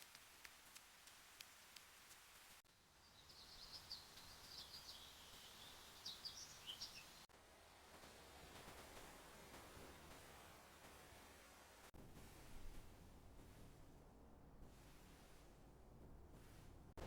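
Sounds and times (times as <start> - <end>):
small birds chirping: 2.8 - 7.3.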